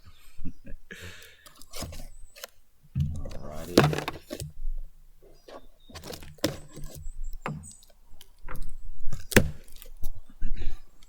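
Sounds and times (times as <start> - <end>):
cardboard box knocks and rustles: 3.6 - 4.5, 6.0 - 7.0.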